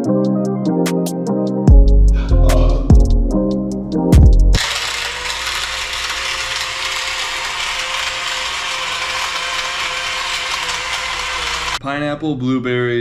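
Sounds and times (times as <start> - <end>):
blender whirring: 4.6 - 11.8.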